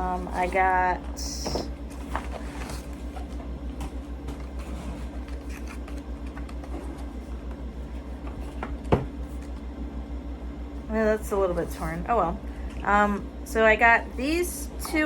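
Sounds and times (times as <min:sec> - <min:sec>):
low hum: 0:00.0 - 0:15.0
cardboard package rustling: 0:01.8 - 0:09.6.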